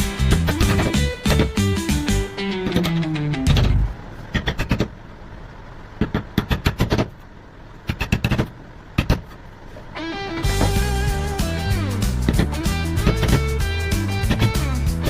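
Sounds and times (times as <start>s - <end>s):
sharp clicks and knocks: 0.3s - 1.7s, 2.6s - 5.0s, 6.0s - 7.2s, 7.8s - 9.4s, 12.2s - 13.5s.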